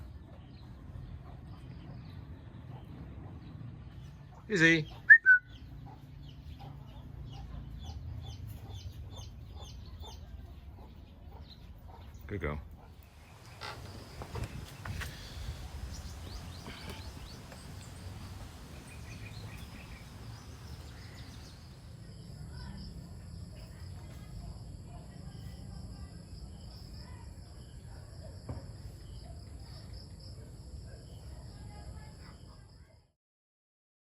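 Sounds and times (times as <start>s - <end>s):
faint bird chirps: 0.0s - 12.2s.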